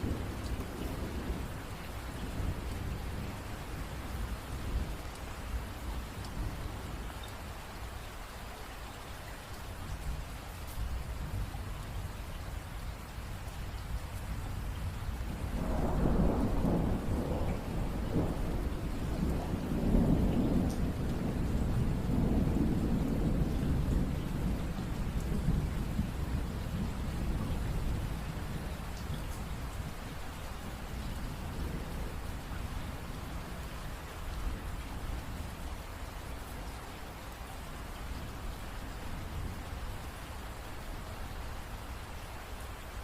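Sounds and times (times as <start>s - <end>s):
thunder rumbling: 0.0s - 7.1s, 14.5s - 33.7s
steady rainfall: 0.0s - 43.0s.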